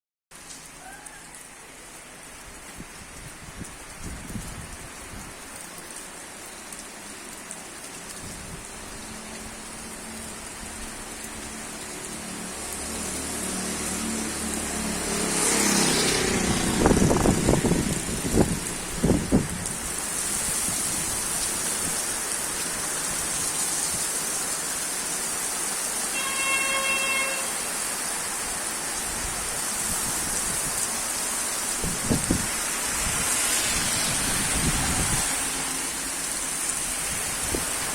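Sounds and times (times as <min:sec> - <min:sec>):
heavy rain pouring: 0:00.3 - 0:37.9
vehicle passing: 0:11.5 - 0:18.3, 0:32.8 - 0:37.0.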